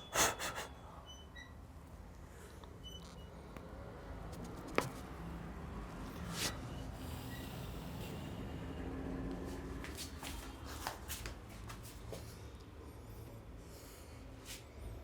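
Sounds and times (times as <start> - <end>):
hands rubbing skin and hair: 4.3 - 5.1.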